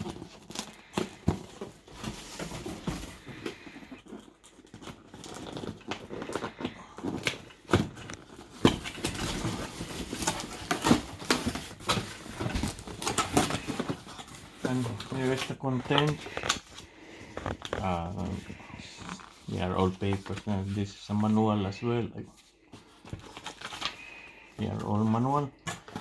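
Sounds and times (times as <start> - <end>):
cardboard box being handled: 0.0 - 20.7.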